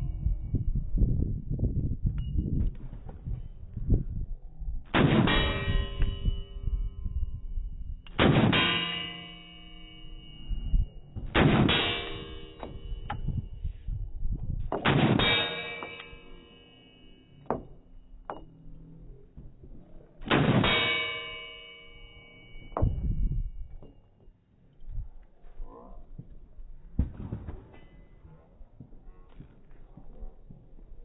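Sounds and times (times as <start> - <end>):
pistol shots: 4.9 - 5.7, 8.1 - 9.8, 11.3 - 12.8, 14.8 - 16.2
steel target clanging: 4.9 - 7.5, 8.1 - 13.6, 14.8 - 18.6, 20.2 - 23.7.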